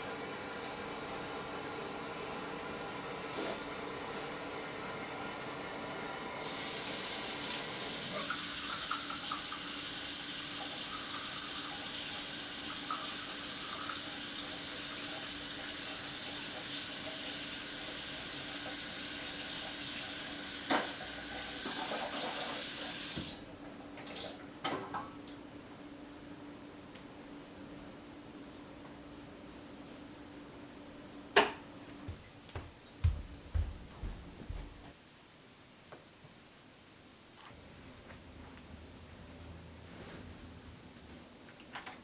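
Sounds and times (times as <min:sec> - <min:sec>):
water running from tap: 0:06.4 - 0:23.4.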